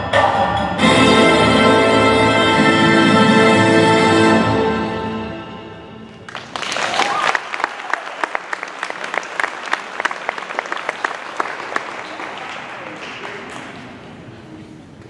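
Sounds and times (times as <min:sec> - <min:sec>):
orchestral chord: 0:00.8 - 0:06.2
audience applause: 0:06.2 - 0:14.0
audience cheer: 0:06.5 - 0:10.0.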